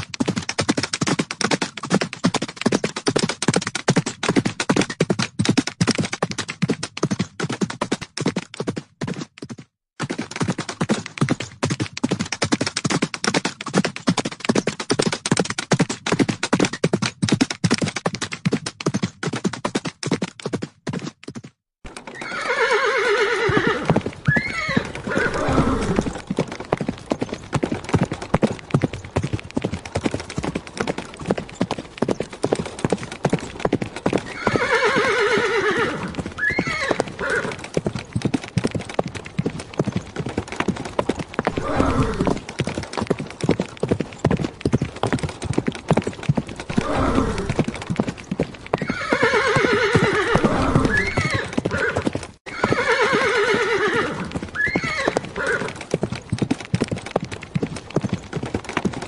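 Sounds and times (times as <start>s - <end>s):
horse hooves clip-clopping: 0.0s - 59.0s
horse whinnying: 21.9s - 26.2s, 34.2s - 37.7s, 41.4s - 42.5s, 46.7s - 47.7s, 48.7s - 55.8s.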